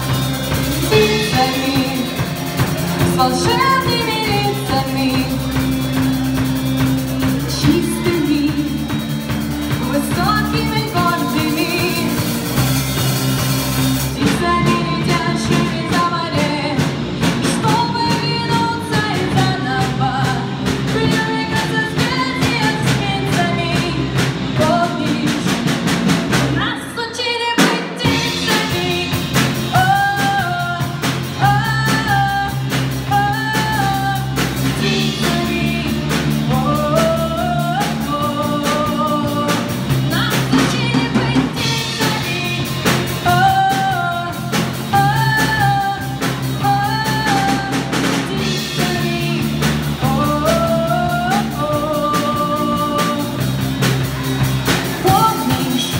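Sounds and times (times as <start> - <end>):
person singing: 0.0 - 12.7, 26.6 - 55.9
band with drums and guitar: 0.0 - 55.9.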